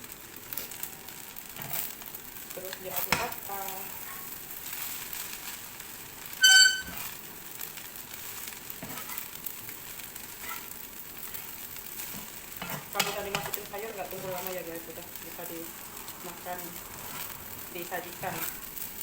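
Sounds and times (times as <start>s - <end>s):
rice sizzling in a pan: 0.0s - 19.0s
short loud ringing tone: 6.4s - 7.0s.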